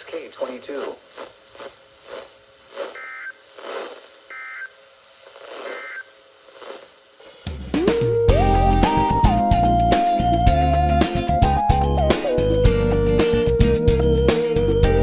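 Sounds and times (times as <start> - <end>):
faint radio background audio: 0.0 - 6.8.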